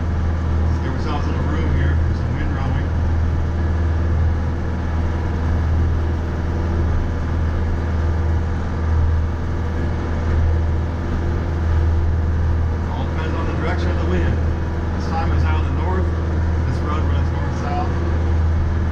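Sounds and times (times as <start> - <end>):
tractor diesel engine droning: 0.0 - 18.9.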